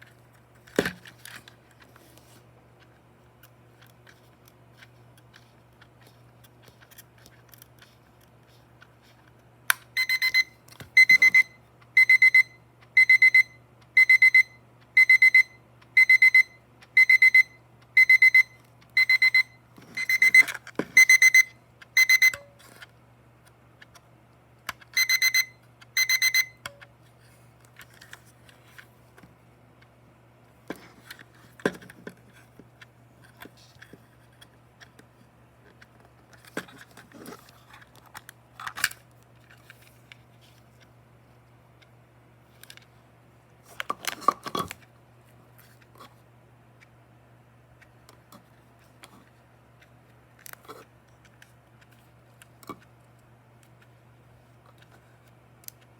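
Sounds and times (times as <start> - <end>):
alarm clock beeping: 10.0 - 22.5, 25.0 - 26.6.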